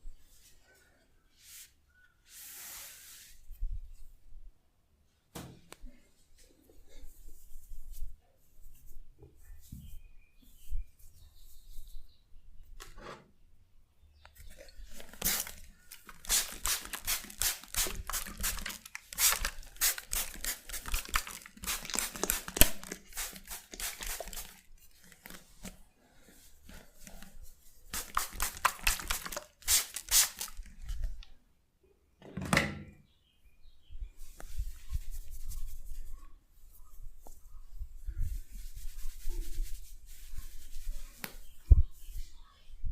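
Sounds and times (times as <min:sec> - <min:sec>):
hands rubbing and tapping hair: 0:14.9 - 0:25.8, 0:26.7 - 0:31.3, 0:34.2 - 0:42.3.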